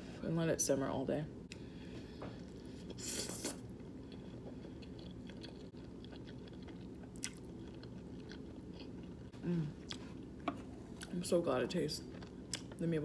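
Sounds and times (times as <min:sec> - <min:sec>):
person chewing food: 0:01.5 - 0:11.1, 0:12.0 - 0:12.8.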